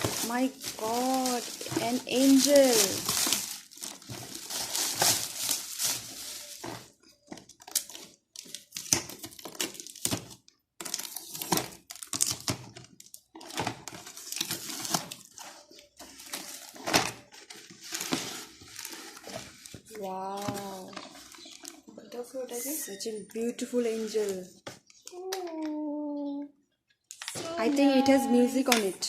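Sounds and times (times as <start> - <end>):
packaging rustling and crinkling: 0.0 - 22.3.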